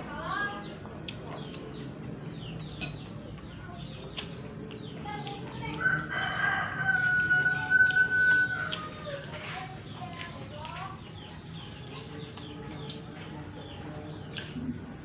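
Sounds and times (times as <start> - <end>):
rooster crowing: 5.8 - 8.8.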